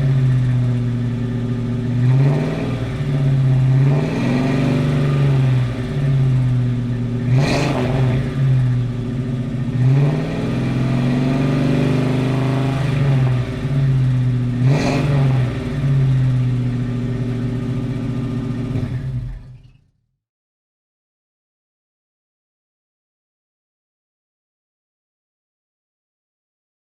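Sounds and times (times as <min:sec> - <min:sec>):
car exhaust idling and revving: 0:00.0 - 0:19.6.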